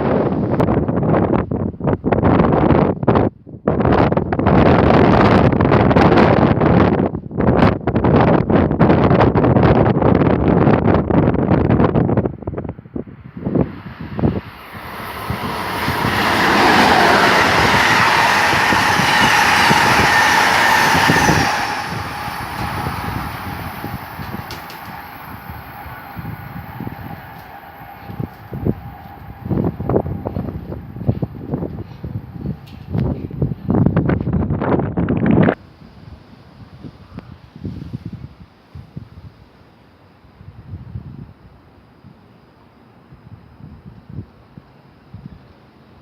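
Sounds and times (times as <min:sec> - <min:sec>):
wind buffeting microphone: 0:00.0 - 0:39.5
train passing on rails: 0:11.6 - 0:35.7.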